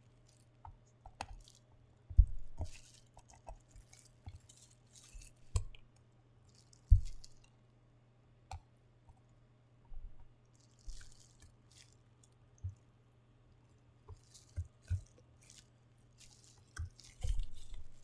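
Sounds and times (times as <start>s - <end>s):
dull handling thumps: 2.1s - 2.7s, 6.9s - 7.3s
packaging crinkling: 10.6s - 12.0s, 14.2s - 18.0s.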